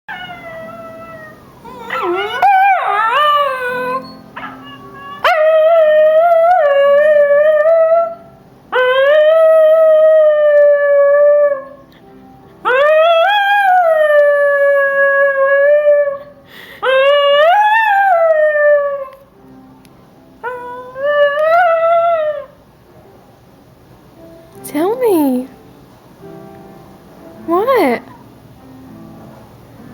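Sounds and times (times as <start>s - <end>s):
dog howling: 0.1s - 8.2s
dog yipping: 1.7s - 5.3s.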